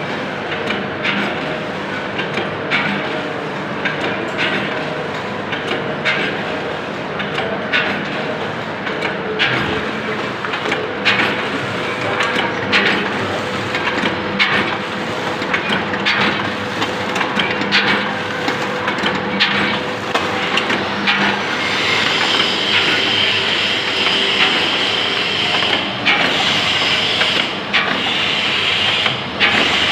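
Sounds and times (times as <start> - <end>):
machine clacks: 0.0 - 29.9
packing machine running: 0.0 - 29.9
high machine whine: 16.0 - 29.9.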